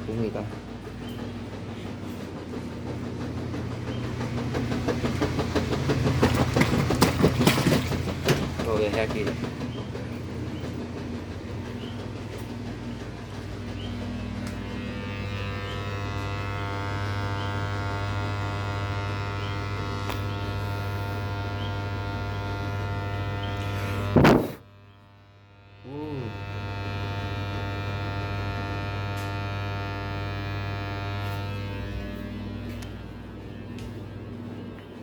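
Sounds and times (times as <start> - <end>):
washing machine motor hum: 0.0 - 35.0
rising motor whine: 11.8 - 35.0
loud thunk: 24.2 - 24.6.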